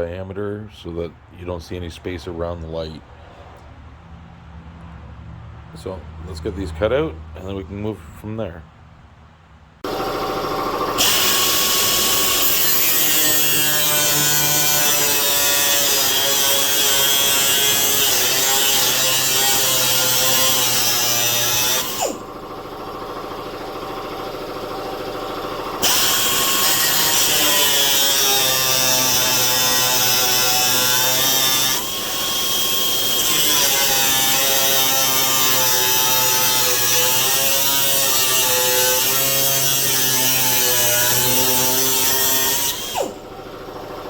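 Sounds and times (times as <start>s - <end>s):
power tool motor whirring: 9.8s - 22.3s, 25.8s - 43.3s.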